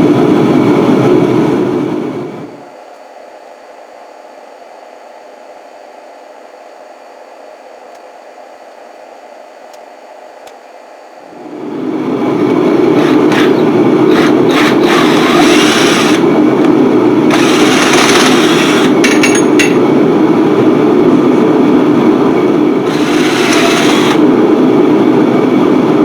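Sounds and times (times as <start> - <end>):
machine motor running: 11.1 - 26.0.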